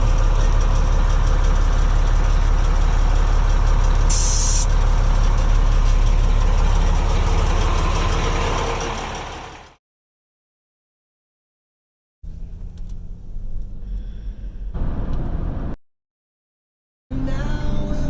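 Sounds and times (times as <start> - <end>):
truck diesel engine idling: 0.0 - 9.8
air release hiss: 4.1 - 4.7.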